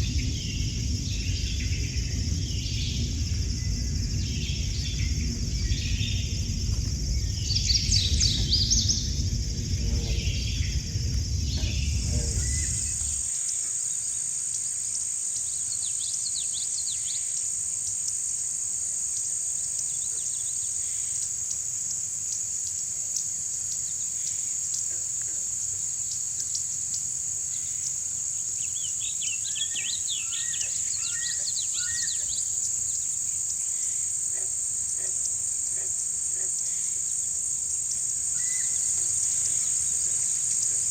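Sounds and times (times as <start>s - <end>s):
low rumbling noise: 0.0s - 13.6s
high-pitched insect drone: 0.0s - 40.9s.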